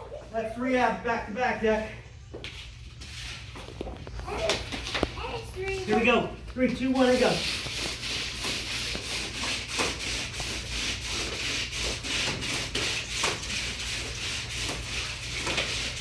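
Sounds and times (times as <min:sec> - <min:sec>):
plastic discs scraping on floor: 0:02.9 - 0:13.7.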